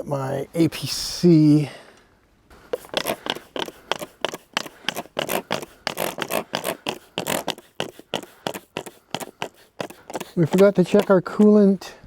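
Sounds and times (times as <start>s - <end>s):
handling scuffs and scrapes: 2.7s - 11.7s.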